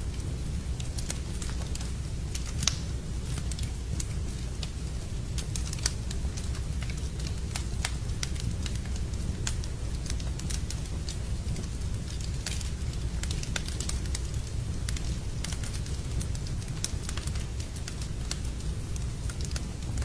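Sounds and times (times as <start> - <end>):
wood fire crackling: 0.0 - 20.0.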